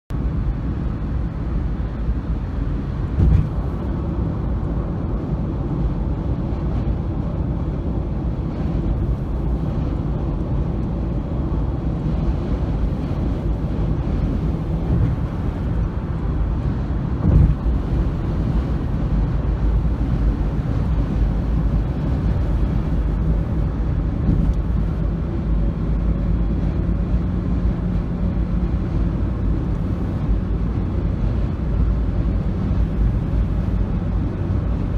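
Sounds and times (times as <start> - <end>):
vehicle travelling rumble: 0.1 - 34.9
brief thumps: 3.2 - 3.7.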